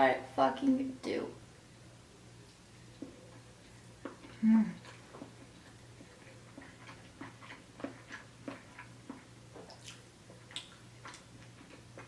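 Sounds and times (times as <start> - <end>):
faint low hum: 0.0 - 12.0
chewing and lip smacks: 2.5 - 12.0.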